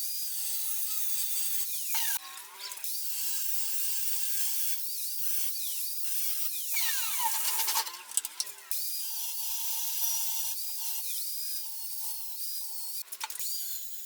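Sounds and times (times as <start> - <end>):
power tool whining: 5.5 - 8.8.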